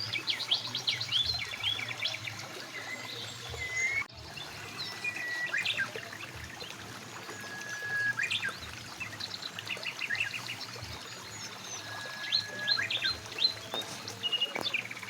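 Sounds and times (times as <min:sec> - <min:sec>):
birds whistling and chirping: 0:00.0 - 0:15.0
river flowing: 0:00.0 - 0:15.0.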